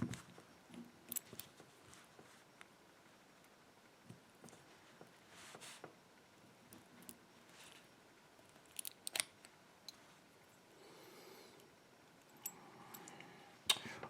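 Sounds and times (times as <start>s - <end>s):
small metal lock parts clicking: 1.1s - 1.5s, 8.5s - 10.0s.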